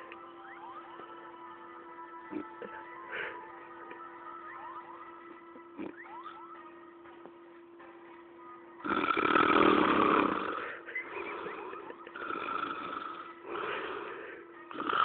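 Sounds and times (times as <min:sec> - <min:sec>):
faint steady hum: 0:00.0 - 0:15.0
person snoring loudly: 0:08.8 - 0:15.0.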